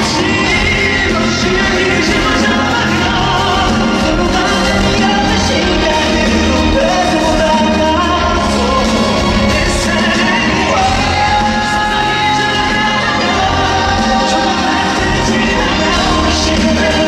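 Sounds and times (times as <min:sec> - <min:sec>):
live band playing: 0:00.0 - 0:17.0.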